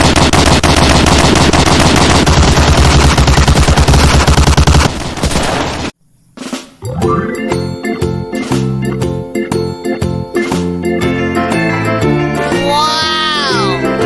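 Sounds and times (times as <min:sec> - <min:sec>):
machine-gun fire: 0:00.0 - 0:05.9.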